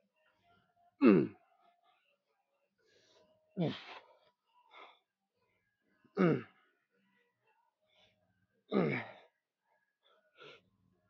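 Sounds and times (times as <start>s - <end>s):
man groaning with effort: 6.2s - 6.5s, 8.7s - 9.2s.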